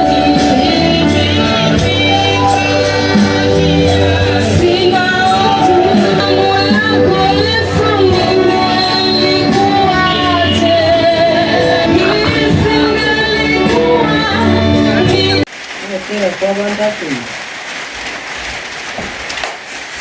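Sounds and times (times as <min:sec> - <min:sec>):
gospel song with singing voices: 0:00.0 - 0:15.5.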